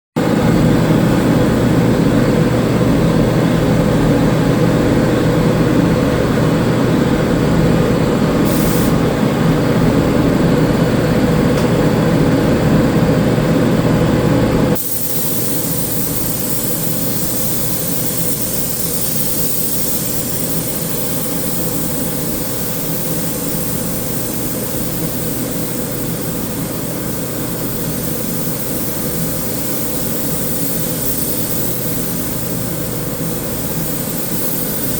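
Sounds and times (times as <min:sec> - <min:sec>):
spray painting machine humming: 0:08.2 - 0:12.8, 0:14.0 - 0:34.9.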